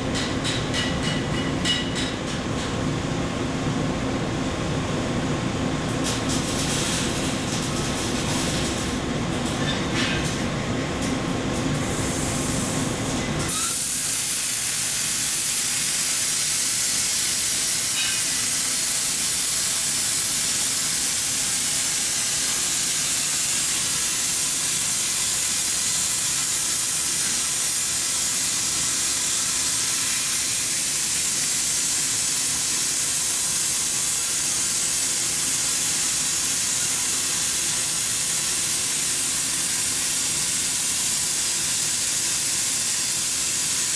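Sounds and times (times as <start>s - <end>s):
welding equipment hissing: 6.1s - 9.1s, 11.8s - 43.9s.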